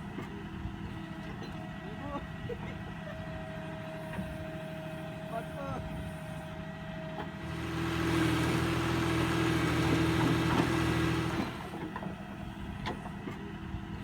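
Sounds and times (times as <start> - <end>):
diesel engine idling and revving: 7.3 - 13.2.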